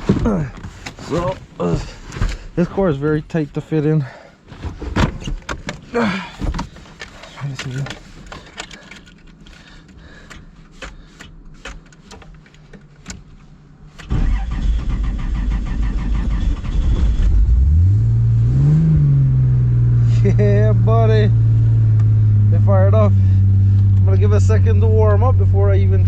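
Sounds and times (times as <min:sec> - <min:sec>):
car engine revving and idling: 0:13.9 - 0:26.0.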